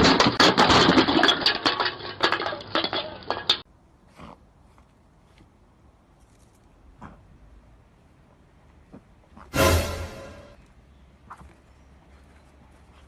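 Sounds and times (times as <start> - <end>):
hard objects clattering together: 0.0 - 3.6.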